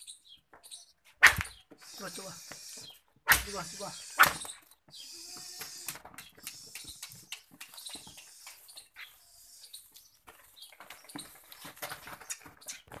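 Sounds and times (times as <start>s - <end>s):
goats knocking and rustling: 4.8s - 9.2s, 9.8s - 13.0s.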